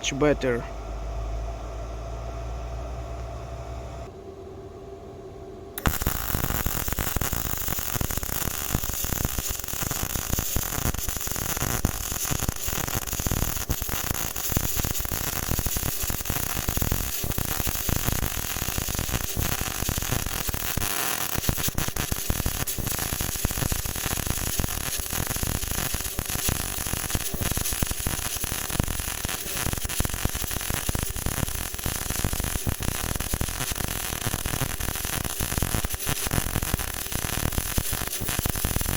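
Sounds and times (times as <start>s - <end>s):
welding arc crackling: 5.8s - 38.9s.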